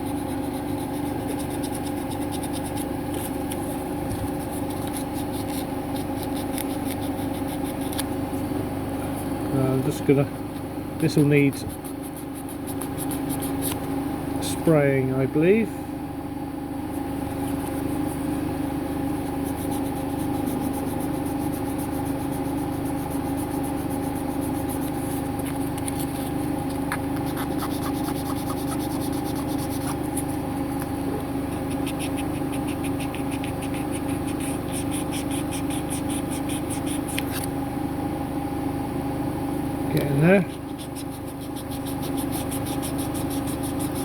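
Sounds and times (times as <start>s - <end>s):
steady mechanical hum: 0.0s - 44.0s.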